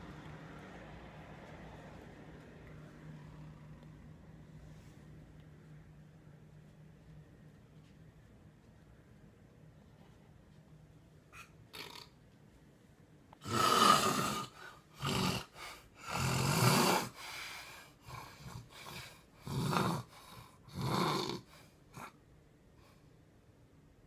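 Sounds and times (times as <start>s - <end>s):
faint breaths: 1.5s - 8.0s, 13.4s - 20.8s
man snoring loudly: 13.4s - 17.2s, 18.1s - 20.1s, 20.7s - 21.5s.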